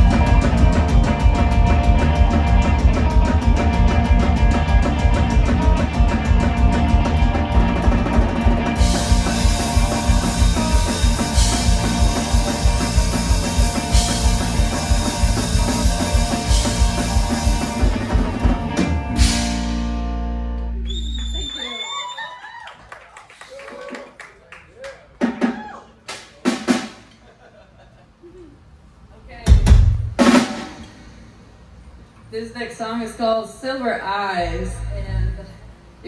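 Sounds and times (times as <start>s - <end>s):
drum kit beat: 0.0s - 20.4s, 25.2s - 27.2s, 29.4s - 31.4s
cymbals crashing: 0.0s - 20.6s, 29.8s - 32.0s
guitar chord ringing: 0.0s - 20.9s
rock band playing: 0.0s - 21.8s.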